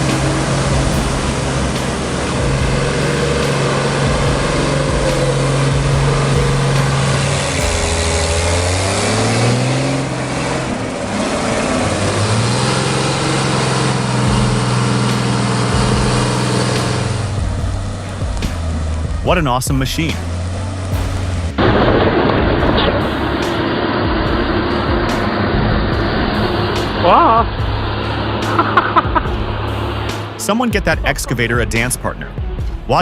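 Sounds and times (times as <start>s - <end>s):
heavy machine engine running: 0.0s - 31.8s.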